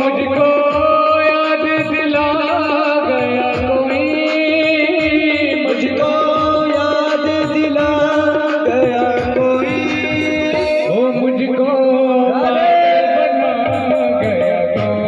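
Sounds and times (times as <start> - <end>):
hand drum beating: 0.3 - 11.0.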